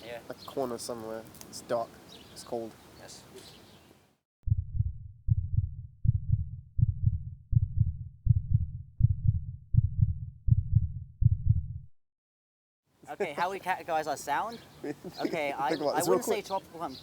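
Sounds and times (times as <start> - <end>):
deep muffled thumps: 4.4 - 11.9.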